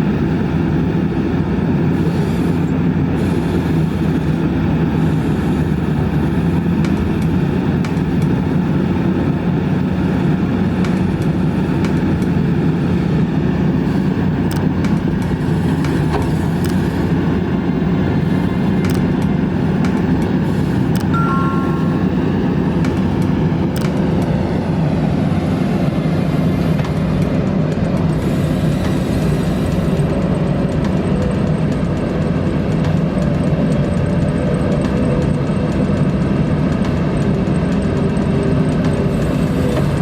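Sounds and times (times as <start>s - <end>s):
excavator diesel engine running: 0.0s - 40.0s
sharp clicks and knocks: 18.2s - 22.2s.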